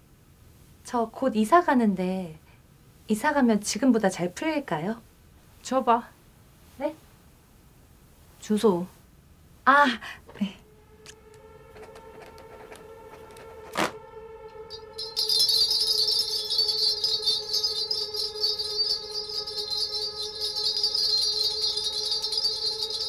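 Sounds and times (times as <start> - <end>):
steady ringing tone: 10.6 - 23.0
bells jingling: 14.6 - 23.0.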